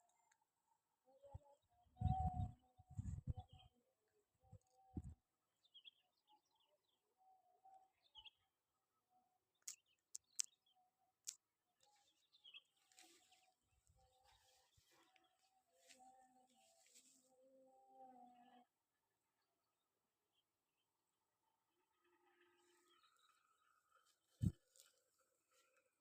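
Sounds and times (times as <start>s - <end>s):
sharp clicks: 9.6s - 10.6s.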